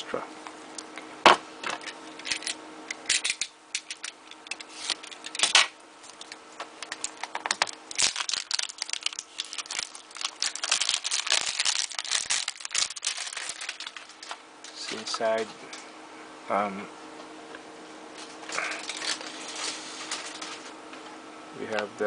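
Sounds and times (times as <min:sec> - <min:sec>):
cardboard packaging crinkling: 0:03.8 - 0:15.1, 0:18.5 - 0:20.7.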